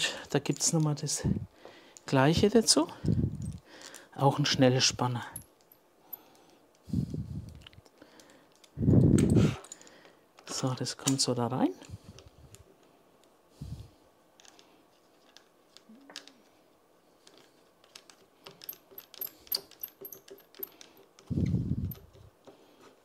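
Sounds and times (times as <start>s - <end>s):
light metallic clicks and clinks: 0.0s - 1.2s, 2.0s - 4.2s, 18.0s - 22.3s.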